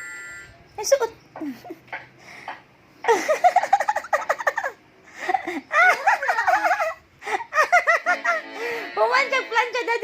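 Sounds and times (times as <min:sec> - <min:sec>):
high-pitched giggling laughter: 0:03.1 - 0:08.5.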